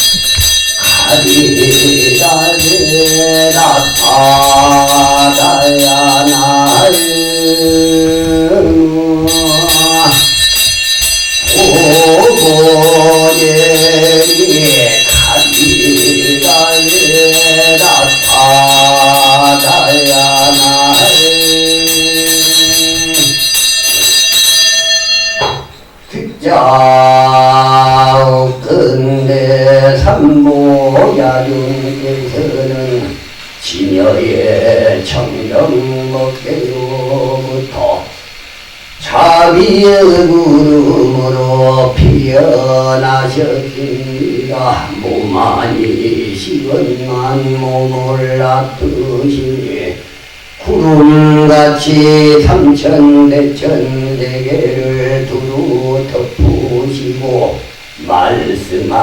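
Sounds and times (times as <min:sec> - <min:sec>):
devotional chant singing: 0:00.0 - 0:59.0
high ringing tones: 0:00.0 - 0:59.0.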